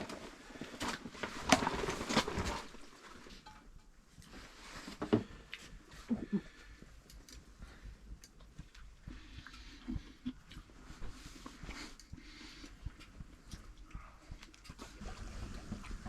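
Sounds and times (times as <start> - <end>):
small handling noises: 0.0 - 16.0
quiet chewing: 5.2 - 16.0.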